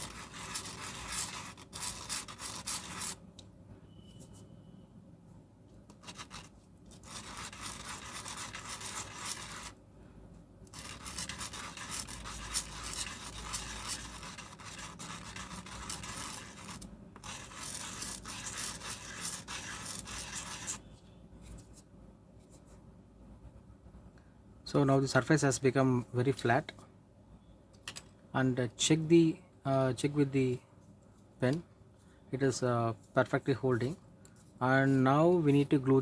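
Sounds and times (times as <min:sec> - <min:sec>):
plastic scraping on sandpaper: 0:00.0 - 0:03.2, 0:06.0 - 0:09.8, 0:10.7 - 0:20.8.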